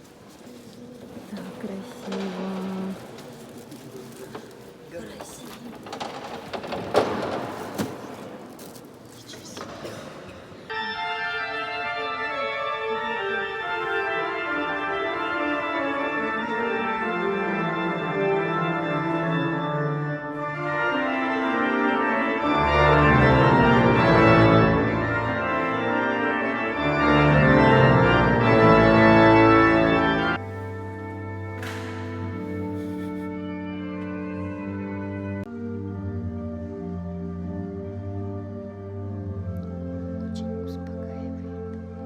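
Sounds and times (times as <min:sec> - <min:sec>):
pipe organ playing chords: 0:10.6 - 0:42.0.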